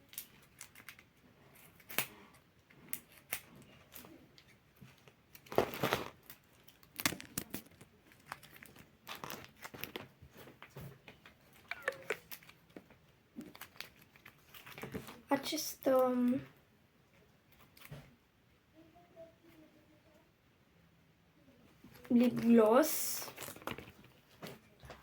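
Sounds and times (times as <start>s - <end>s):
plastic wrapping crinkling: 0.0s - 16.1s, 21.8s - 25.0s
plastic rustling: 0.0s - 16.3s, 21.7s - 25.0s.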